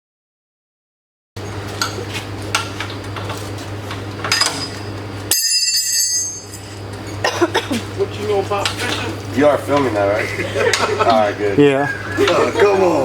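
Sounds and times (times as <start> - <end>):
steady low hum: 1.4 - 13.0
metal objects clinking: 4.2 - 7.2.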